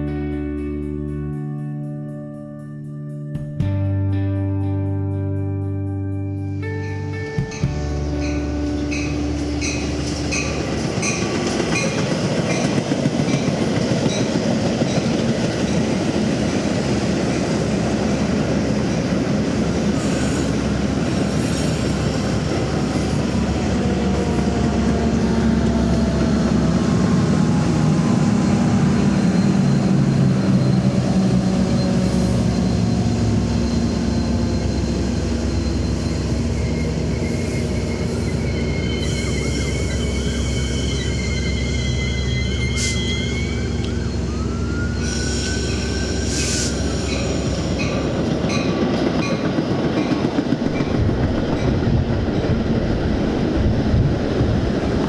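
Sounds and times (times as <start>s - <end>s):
train wheels rumbling and rattling: 7.4s - 55.0s
wheels squealing: 19.9s - 53.4s.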